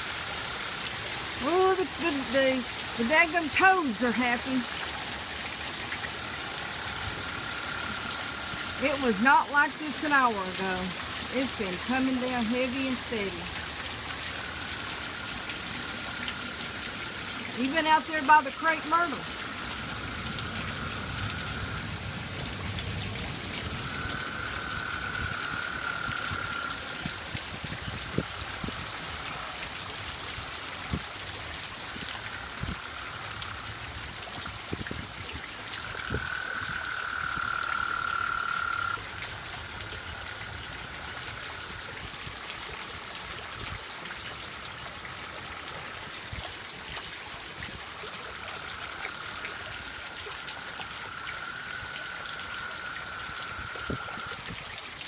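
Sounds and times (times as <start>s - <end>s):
heavy rain falling: 0.0s - 55.0s
toads trilling: 23.7s - 27.1s, 35.8s - 40.4s, 50.8s - 54.4s.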